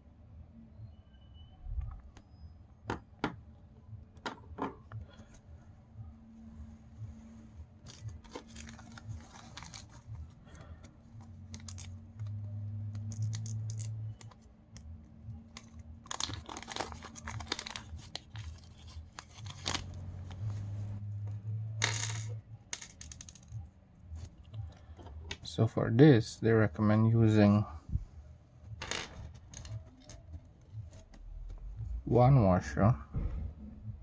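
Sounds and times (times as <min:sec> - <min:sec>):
packaging tearing and crinkling: 0:07.9 - 0:10.1, 0:16.0 - 0:20.0
low hum: 0:29.6 - 0:34.0.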